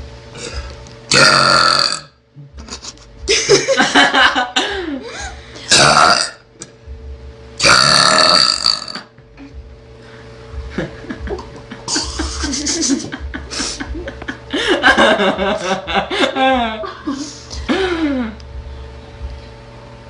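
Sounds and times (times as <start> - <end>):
woman burping: 1.1 - 2.8, 5.7 - 6.4, 7.6 - 9.2
laughter: 2.6 - 5.4, 10.7 - 18.4.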